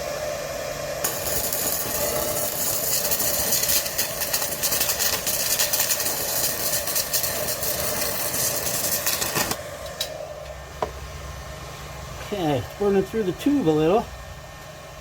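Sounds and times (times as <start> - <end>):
welder humming: 0.0 - 15.0
welding arc crackling: 1.0 - 10.6.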